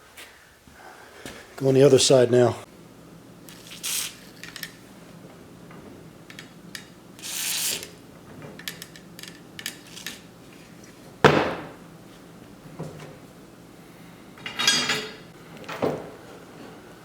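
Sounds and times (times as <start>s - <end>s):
light clicks of fittings: 3.5s - 4.8s, 6.3s - 7.9s.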